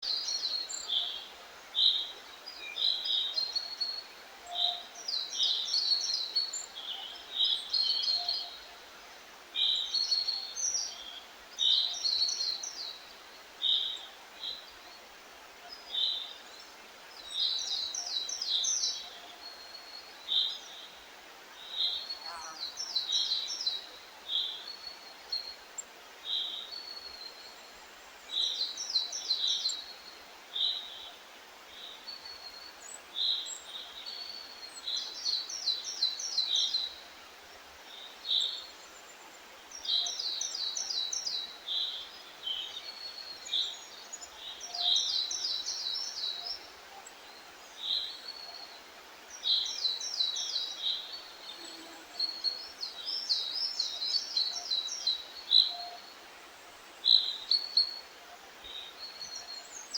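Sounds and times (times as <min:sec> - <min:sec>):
songbirds singing: 0:00.0 - 0:08.8, 0:09.5 - 0:59.9
faint steady hiss: 0:00.0 - 0:59.9.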